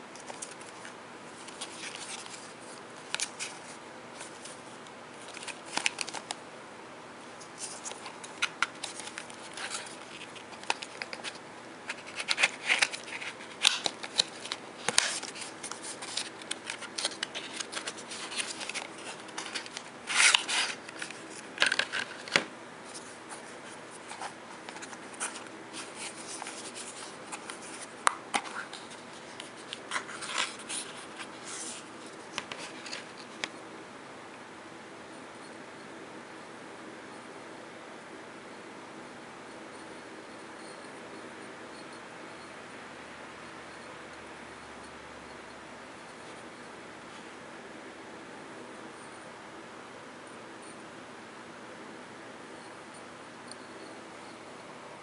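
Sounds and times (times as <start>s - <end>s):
packaging rustling and scraping: 0.2s - 4.6s, 7.6s - 33.5s.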